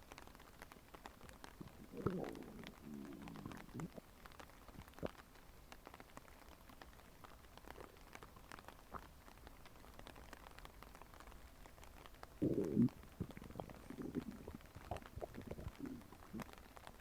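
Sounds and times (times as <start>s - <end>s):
stomach gurgling: 1.0s - 5.2s, 7.5s - 9.3s, 12.0s - 17.0s
stomach growl: 1.2s - 5.2s, 7.6s - 9.2s, 12.4s - 17.0s.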